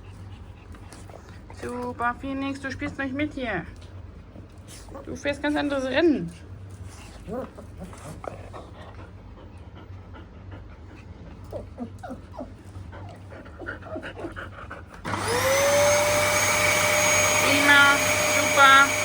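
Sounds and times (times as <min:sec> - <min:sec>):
puppies whimpering: 0:11.4 - 0:14.4
vacuum cleaner motor whine: 0:15.0 - 0:19.0.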